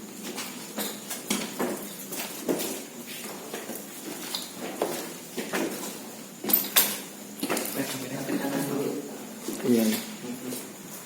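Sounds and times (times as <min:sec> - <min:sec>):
footsteps on hard floor: 0:00.0 - 0:08.0.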